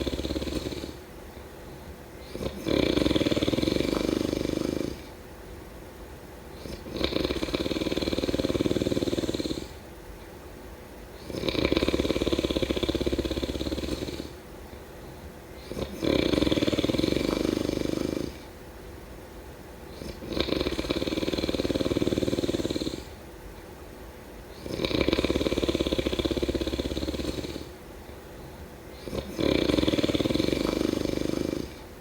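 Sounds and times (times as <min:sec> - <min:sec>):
person snoring: 0:00.0 - 0:01.1, 0:02.2 - 0:05.1, 0:06.6 - 0:09.8, 0:11.2 - 0:14.4, 0:15.6 - 0:18.5, 0:19.9 - 0:23.2, 0:24.5 - 0:27.8, 0:28.9 - 0:31.8.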